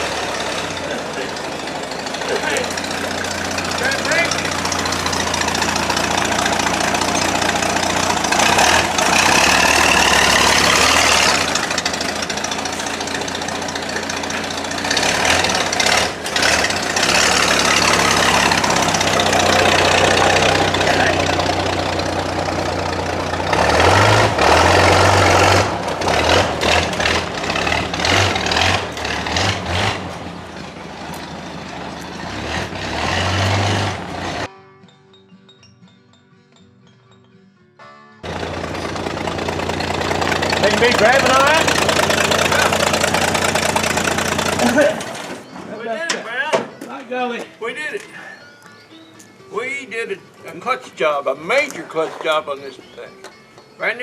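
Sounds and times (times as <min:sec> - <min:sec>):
car engine revving: 0:00.0 - 0:34.5, 0:38.2 - 0:45.5.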